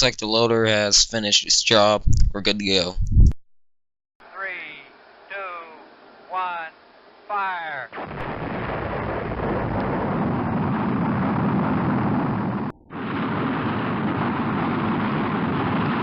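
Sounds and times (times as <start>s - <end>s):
rocket engines rumbling: 7.9s - 16.0s.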